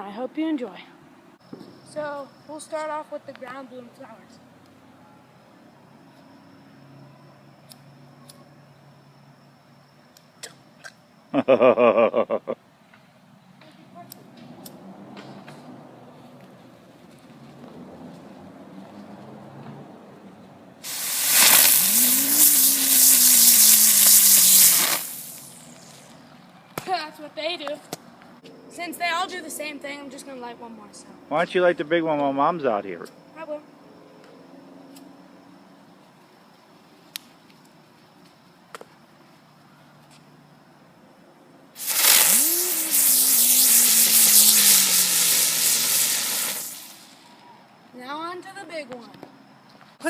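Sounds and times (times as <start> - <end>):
firework spraying hiss: 20.8 - 26.3, 41.8 - 47.4.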